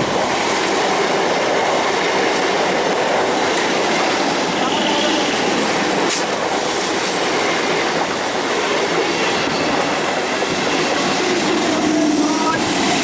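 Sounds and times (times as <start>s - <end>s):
train wheels clattering over rails: 0.0s - 13.0s.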